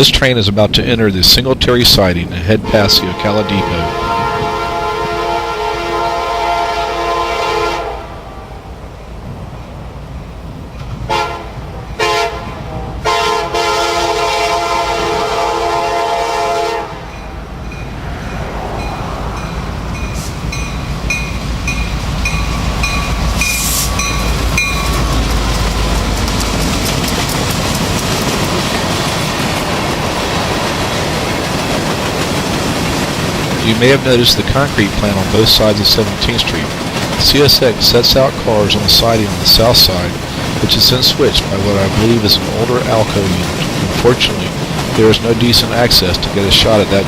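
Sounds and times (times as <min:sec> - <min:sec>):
train rumble: 0:00.0 - 0:47.0
locomotive horn blasts: 0:02.6 - 0:08.5, 0:11.1 - 0:17.3
train wheels clattering over rails: 0:09.2 - 0:47.0.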